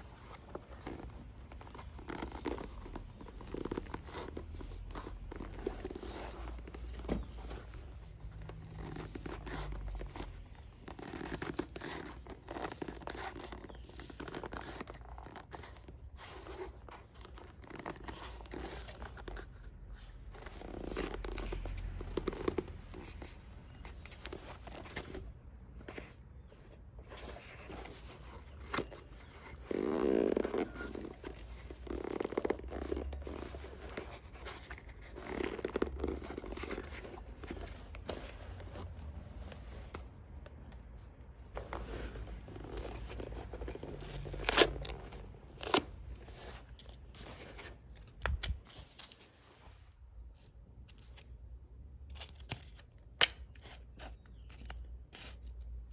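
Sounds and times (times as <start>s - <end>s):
leather scraping and tearing: 0.0s - 7.9s, 8.5s - 19.4s, 27.6s - 39.0s, 41.5s - 47.8s.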